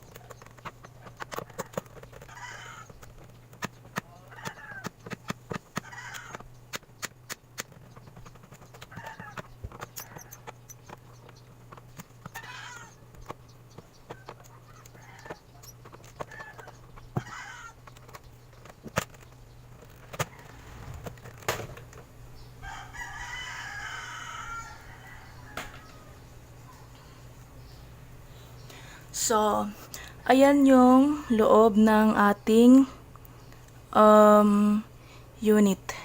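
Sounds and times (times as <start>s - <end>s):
steady low hum: 0.0s - 36.0s
bird calling: 12.2s - 18.6s.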